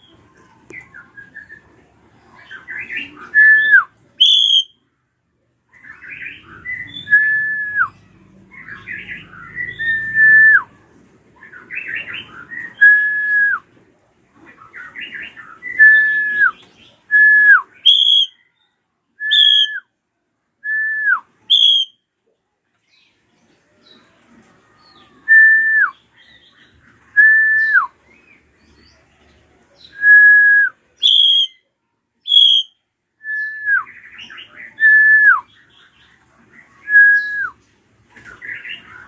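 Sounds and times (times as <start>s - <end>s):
drongo calling: 2.6s - 4.8s, 14.6s - 18.4s, 19.2s - 19.9s, 21.5s - 22.0s, 29.9s - 31.6s, 32.2s - 35.9s.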